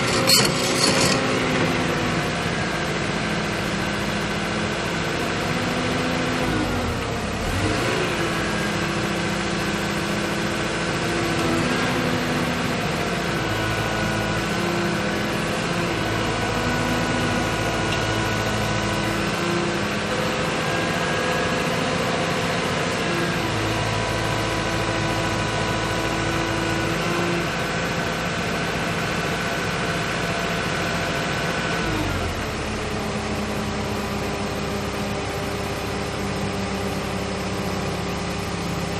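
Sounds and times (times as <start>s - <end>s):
excavator diesel engine running: 0.0s - 38.9s.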